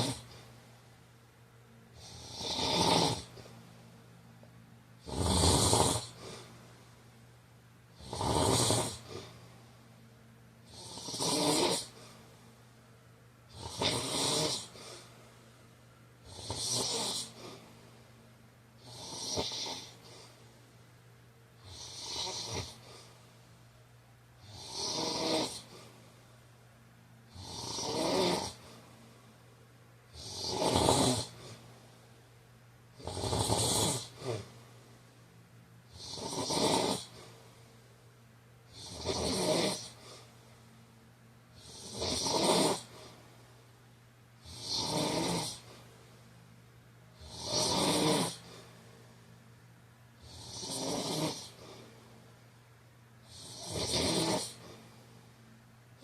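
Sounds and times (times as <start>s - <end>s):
man snoring: 0.0s - 0.5s, 1.9s - 3.5s, 5.0s - 6.7s, 7.9s - 9.4s, 10.6s - 12.2s, 13.5s - 15.1s, 16.2s - 17.8s, 18.8s - 20.3s, 21.6s - 23.2s, 24.4s - 25.9s, 27.3s - 28.8s, 30.1s - 31.7s, 32.9s - 34.6s, 35.9s - 37.3s, 38.7s - 40.3s, 41.5s - 43.2s, 44.4s - 45.8s, 47.1s - 48.6s, 50.2s - 52.0s, 53.2s - 54.9s.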